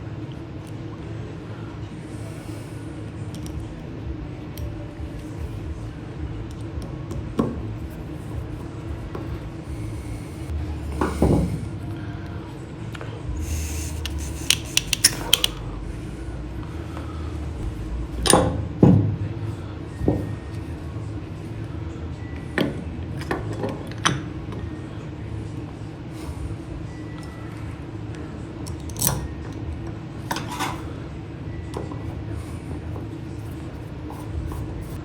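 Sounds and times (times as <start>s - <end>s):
steady low hum: 0.0s - 35.0s
small metal parts clinking: 13.5s - 15.6s.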